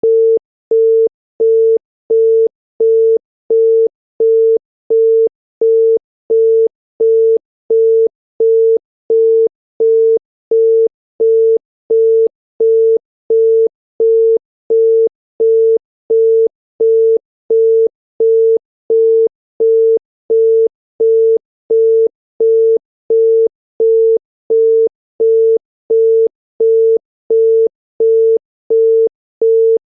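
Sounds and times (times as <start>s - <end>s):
telephone busy tone beeping: 0.0s - 29.8s.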